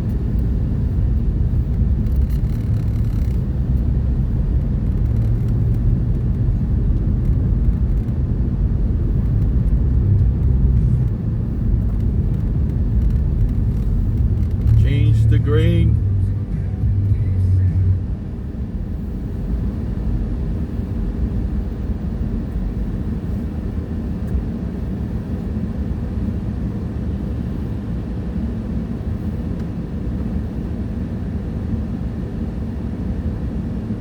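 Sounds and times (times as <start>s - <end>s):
loud low hum: 0.0s - 24.1s
vehicle engine and road rumble: 0.0s - 34.0s.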